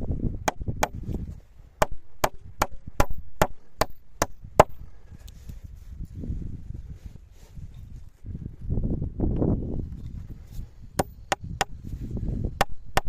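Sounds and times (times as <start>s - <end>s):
wind on microphone: 0.0s - 3.3s, 4.0s - 13.0s
hand tool striking wood: 0.5s - 1.0s, 1.8s - 4.8s, 11.0s - 11.8s, 12.6s - 13.0s.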